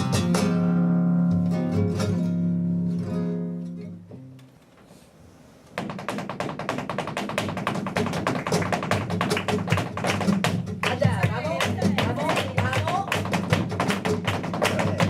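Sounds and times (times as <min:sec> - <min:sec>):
acoustic guitar chords: 0:00.0 - 0:04.4.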